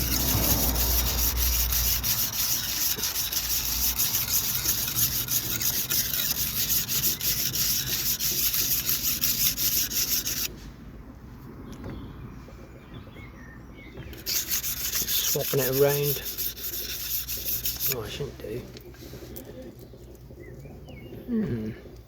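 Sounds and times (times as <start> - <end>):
knife grinding on sharpening wheel: 0.0 - 10.5, 14.2 - 18.2.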